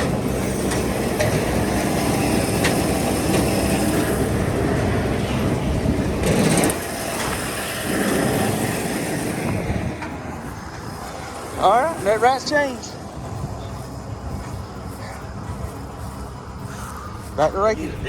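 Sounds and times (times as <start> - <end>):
tractor and baler rumbling: 0.0 - 18.0.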